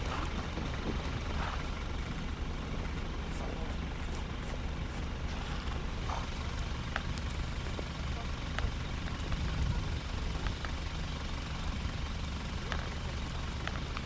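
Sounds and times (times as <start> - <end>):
wind buffeting microphone: 8.6 - 10.6.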